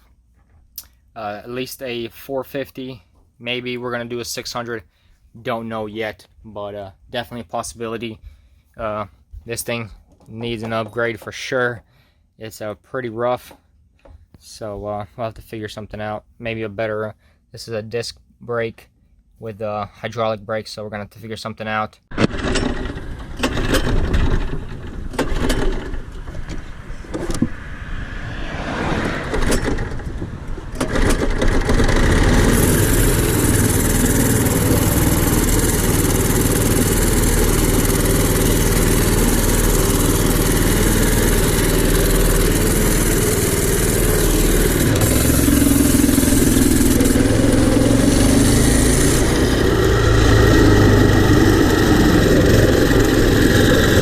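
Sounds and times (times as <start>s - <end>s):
small petrol engine starting: 22.1s - 27.4s, 28.3s - 54.0s.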